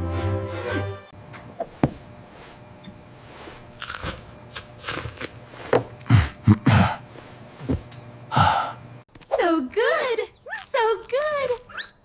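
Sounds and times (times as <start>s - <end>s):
chewing crunches: 3.6s - 6.1s, 10.5s - 12.0s
crunching bites into apple: 3.7s - 5.5s.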